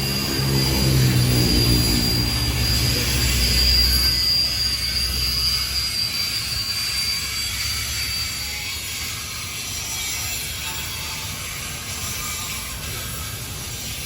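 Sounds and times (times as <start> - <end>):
low train rumble: 0.0 - 7.8
train wheel squeal: 0.0 - 14.0.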